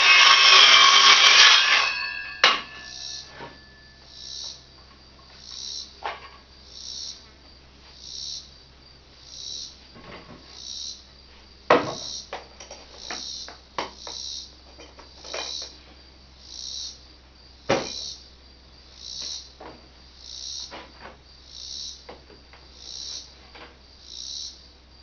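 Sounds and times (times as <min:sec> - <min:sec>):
sharp knocks: 0:00.0 - 0:03.8
insects buzzing: 0:00.0 - 0:25.0.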